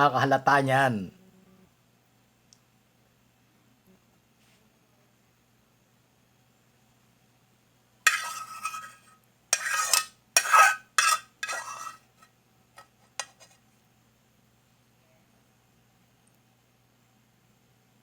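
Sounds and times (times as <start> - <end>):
metal utensil scraping cookware: 8.1 - 13.6.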